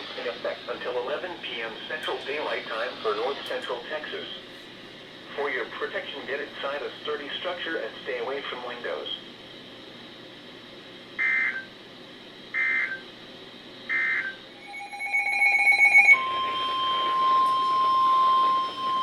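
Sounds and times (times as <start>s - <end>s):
steady warning alarm tone: 13.9s - 19.0s
warbling data bursts: 14.6s - 19.0s.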